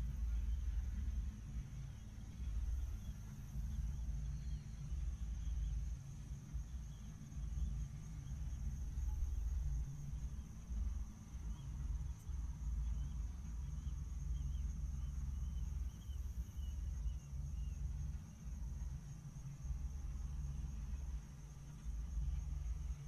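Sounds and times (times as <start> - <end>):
low uneven rumble: 0.0 - 23.0
faint bird chirps: 1.9 - 10.6.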